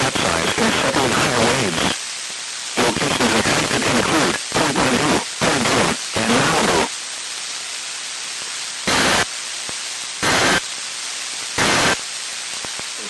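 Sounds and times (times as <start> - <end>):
announcer voice over radio: 0.0 - 2.0, 2.8 - 6.9
radio static hiss: 0.0 - 13.0.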